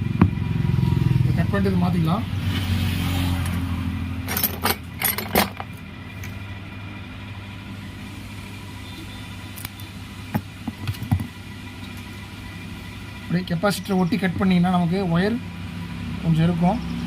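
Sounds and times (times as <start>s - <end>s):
steady low hum: 3.4s - 17.0s.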